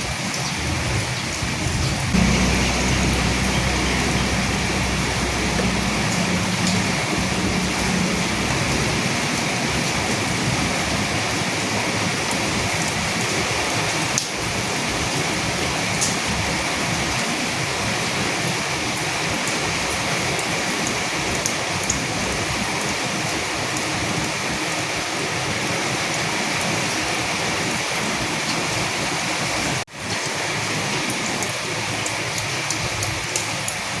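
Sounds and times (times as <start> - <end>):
steady rain hiss: 0.0 - 33.8
low rumble: 2.2 - 11.7.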